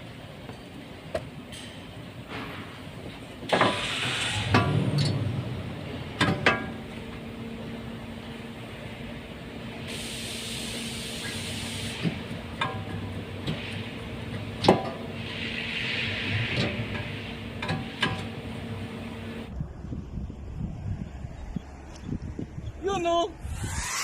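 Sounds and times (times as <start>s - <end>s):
hiss: 9.9s - 12.2s, 15.2s - 17.4s.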